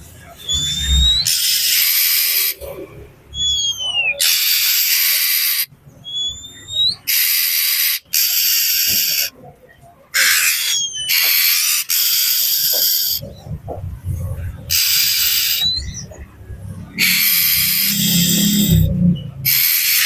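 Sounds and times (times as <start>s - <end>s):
bird whistled notes: 0.4s - 2.6s, 3.3s - 9.3s, 10.2s - 13.2s, 14.7s - 16.1s, 17.0s - 18.9s, 19.5s - 20.0s
bird harsh hissing rasps: 0.5s - 2.6s, 4.2s - 5.7s, 7.1s - 9.3s, 10.2s - 13.2s, 14.7s - 15.9s, 17.0s - 18.8s, 19.4s - 20.0s.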